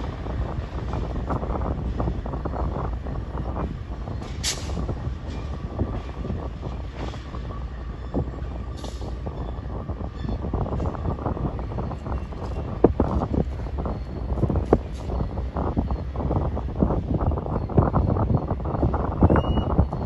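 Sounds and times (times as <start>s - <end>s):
freight train rumbling past: 0.0s - 20.0s
high-pitched wheel squeals: 19.2s - 20.0s.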